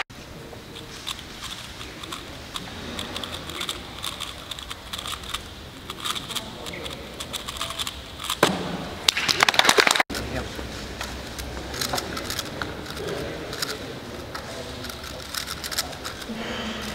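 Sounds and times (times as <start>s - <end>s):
faint background chatter: 0.1s - 9.0s, 10.1s - 16.9s
plastic puzzle cube clicking: 0.8s - 8.4s, 11.0s - 16.9s.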